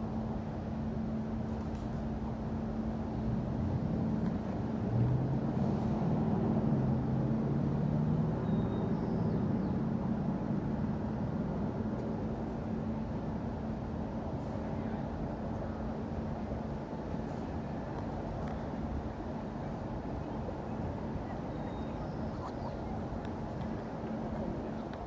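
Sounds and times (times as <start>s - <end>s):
traffic rumble and hum: 10.0s - 25.0s.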